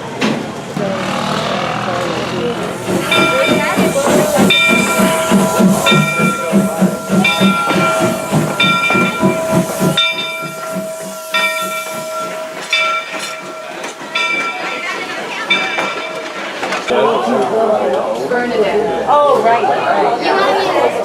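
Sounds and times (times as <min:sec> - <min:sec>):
steam locomotive chuffing: 0:00.5 - 0:16.9
locomotive bell ringing: 0:02.5 - 0:16.9.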